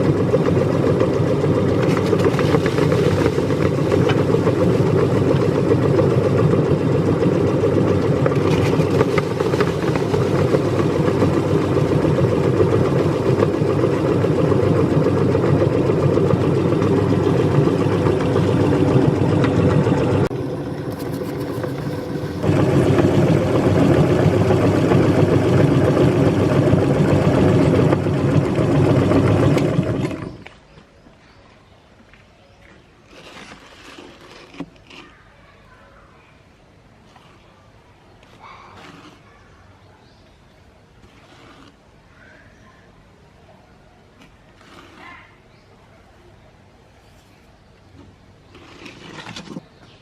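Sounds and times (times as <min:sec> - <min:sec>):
meat grinder churning: 0:00.0 - 0:30.4.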